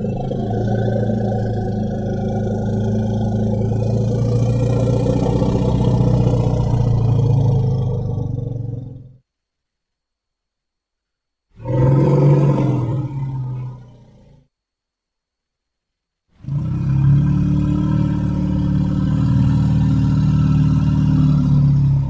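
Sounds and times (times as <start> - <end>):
elephant call: 0.0 - 8.8.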